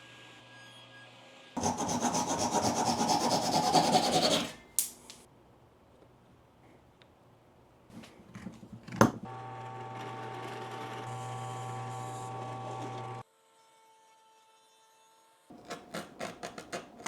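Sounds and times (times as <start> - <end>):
small electric motor running: 9.3 - 13.9.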